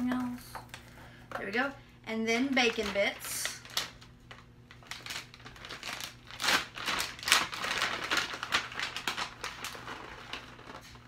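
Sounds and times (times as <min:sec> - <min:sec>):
plastic bag crinkling: 0:02.4 - 0:11.0.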